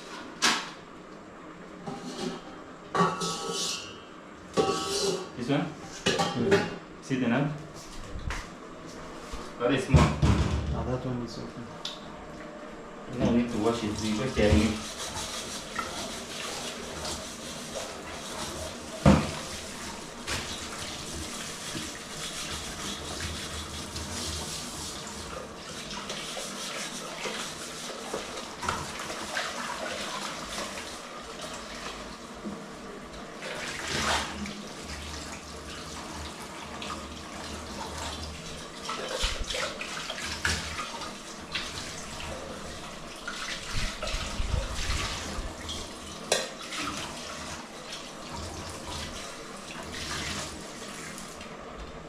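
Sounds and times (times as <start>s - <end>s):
water running and splashing: 13.7s - 32.4s, 33.2s - 51.6s.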